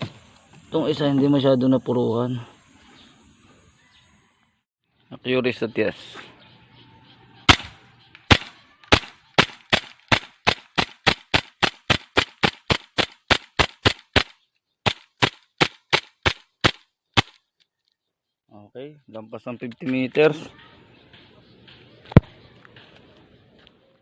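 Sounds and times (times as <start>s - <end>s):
airsoft pistol shots: 7.5s - 17.4s.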